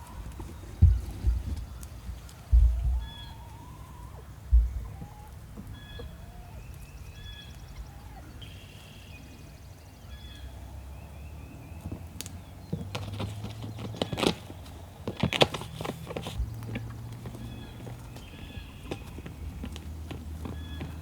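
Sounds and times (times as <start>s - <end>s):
sharp clicks and rustles: 11.8s - 21.0s.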